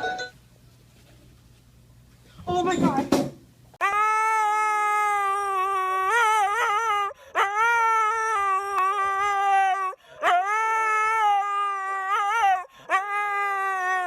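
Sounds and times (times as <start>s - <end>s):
dog howling: 3.8s - 14.0s.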